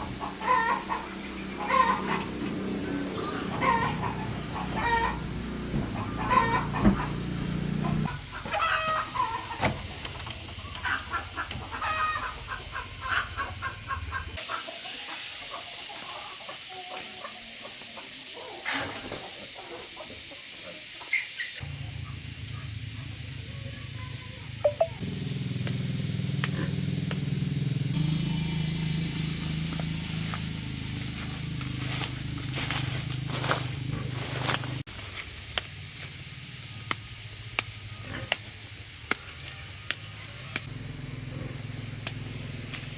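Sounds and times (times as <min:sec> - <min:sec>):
chickens clucking: 0:00.0 - 0:22.2
high cheeps: 0:24.6 - 0:25.0.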